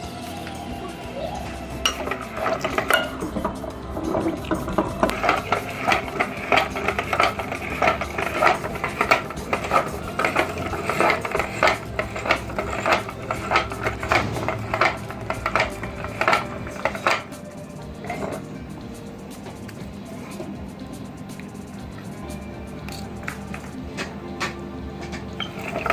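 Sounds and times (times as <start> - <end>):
low motor hum: 0.0 - 25.9
grinder crunching ice cream cones: 4.1 - 17.4.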